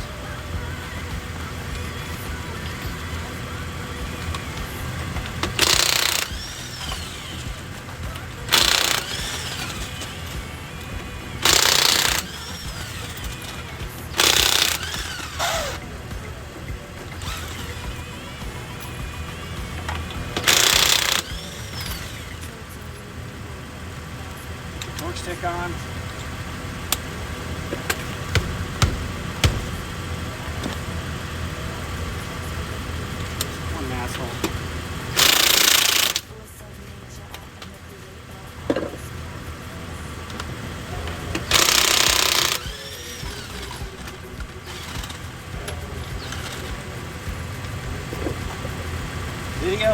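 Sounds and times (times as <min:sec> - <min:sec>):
vehicle engine idling: 0:00.0 - 0:49.9
impact wrench hammering: 0:04.6 - 0:10.5, 0:11.4 - 0:15.8, 0:19.8 - 0:22.4, 0:27.8 - 0:30.3, 0:35.2 - 0:36.2, 0:41.5 - 0:48.7.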